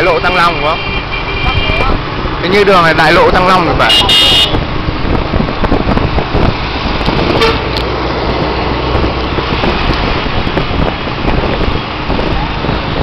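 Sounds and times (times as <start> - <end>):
road traffic rumble: 0.0 - 13.0
rushing air: 3.3 - 13.0.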